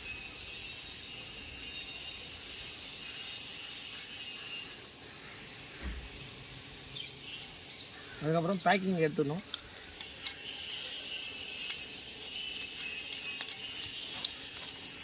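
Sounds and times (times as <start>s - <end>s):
steady high hiss: 0.0s - 9.4s
metallic clinks of hand tools: 3.6s - 5.6s, 6.2s - 15.0s.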